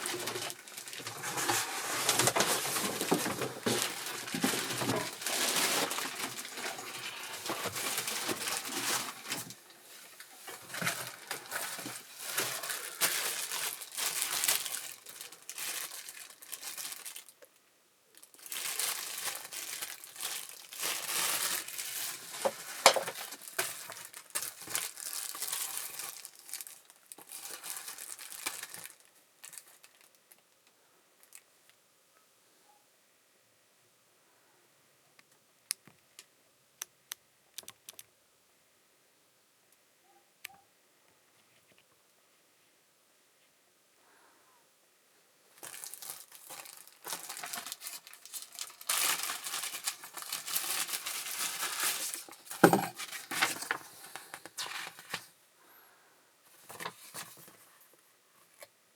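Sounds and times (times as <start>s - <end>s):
packaging crinkling and tearing: 0.0s - 17.5s, 18.1s - 30.6s, 45.6s - 55.3s.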